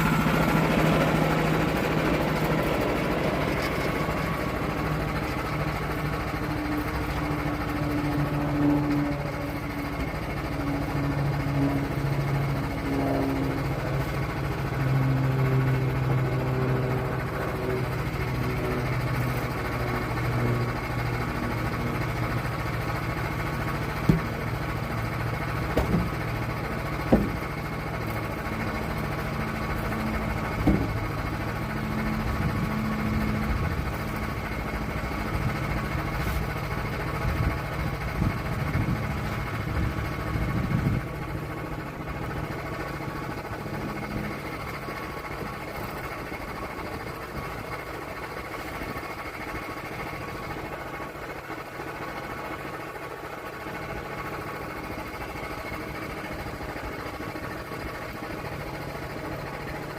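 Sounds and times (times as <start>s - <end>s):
engine running: 0.0s - 59.9s
sharp knocks: 24.0s - 24.3s, 25.8s - 26.1s, 27.1s - 27.4s.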